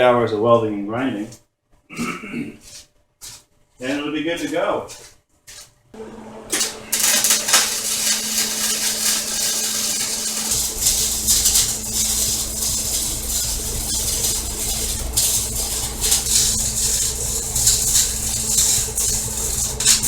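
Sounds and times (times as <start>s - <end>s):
welder arc crackle and sizzle: 2.6s - 20.0s
constant electrical hum: 6.0s - 20.0s
deep low hum: 7.6s - 20.0s.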